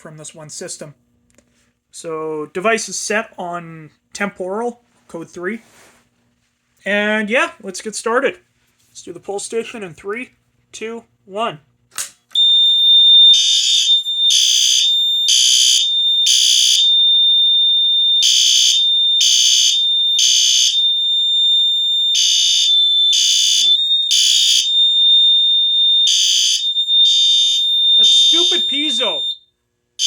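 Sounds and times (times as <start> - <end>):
fire alarm horn blasts: 12.4 - 29.6
piezo high tone: 22.2 - 25.4, 28.0 - 29.4.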